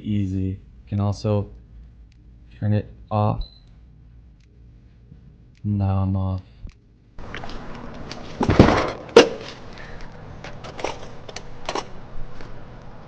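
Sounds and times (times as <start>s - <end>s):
handling knocks and clicks: 7.2s - 12.9s
handling thump: 8.4s - 9.6s.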